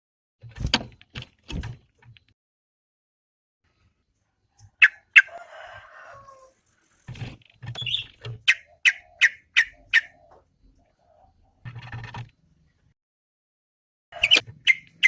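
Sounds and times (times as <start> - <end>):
bulbul calling: 4.6 - 5.4, 7.8 - 11.3, 14.2 - 15.0.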